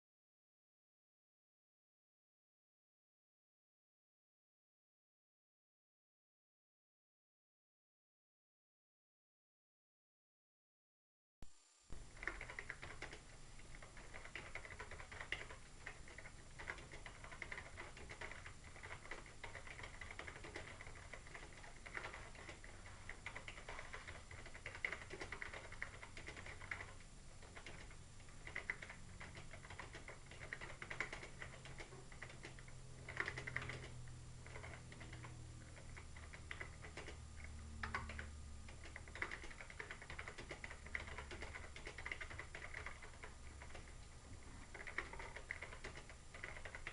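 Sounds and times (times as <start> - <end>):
faint low hum: 11.4 - 46.9.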